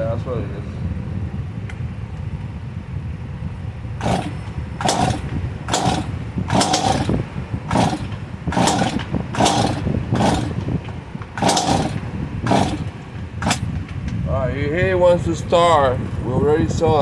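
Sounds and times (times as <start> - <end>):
chainsaw recoil starter pulls: 4.0 - 14.1.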